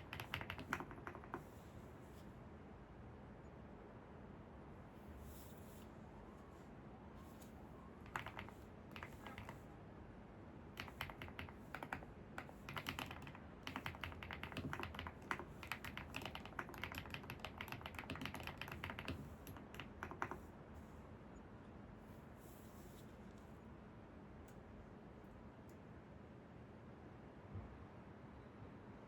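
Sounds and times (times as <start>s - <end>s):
keyboard typing: 0.0s - 1.6s, 8.0s - 9.6s, 10.8s - 20.5s
faint background noise: 0.0s - 29.0s.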